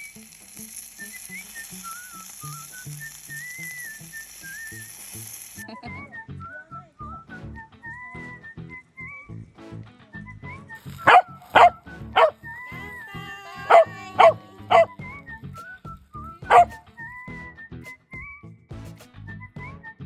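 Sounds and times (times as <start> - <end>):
music with whistled melody: 0.0 - 20.0
dog barking: 11.0 - 12.9, 13.5 - 15.0, 16.5 - 16.8.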